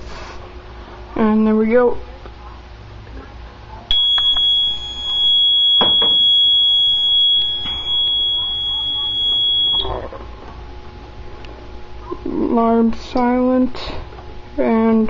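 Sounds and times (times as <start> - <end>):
high-pitched alarm tone: 3.9 - 9.9.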